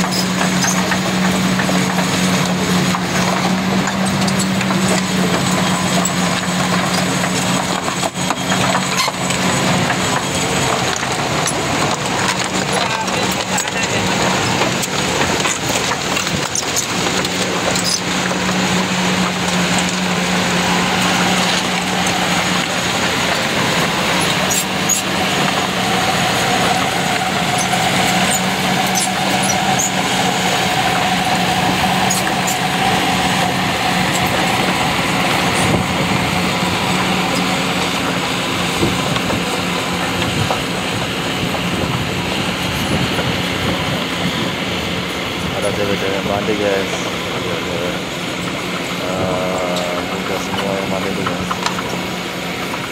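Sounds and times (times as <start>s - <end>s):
excavator engine drone: 0.0s - 52.9s
metallic track clanks: 0.0s - 52.9s.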